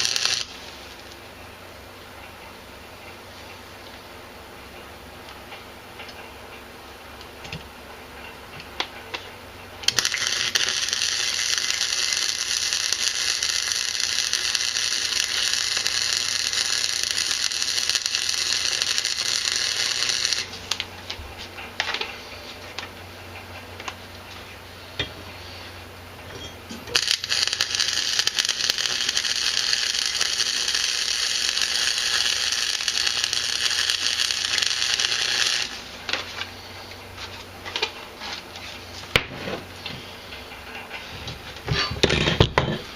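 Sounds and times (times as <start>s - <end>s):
harsh metalworking noise: 0.0s - 0.6s, 9.8s - 22.2s, 26.2s - 36.8s
shop fan humming: 0.0s - 42.9s.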